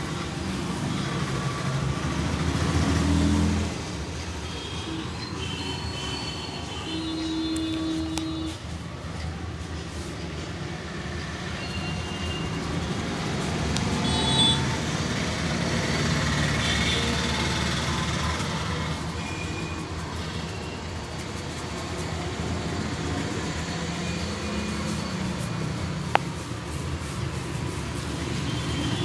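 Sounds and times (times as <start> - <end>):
heavy vehicle engine passing: 0.0 - 4.2, 12.4 - 19.2.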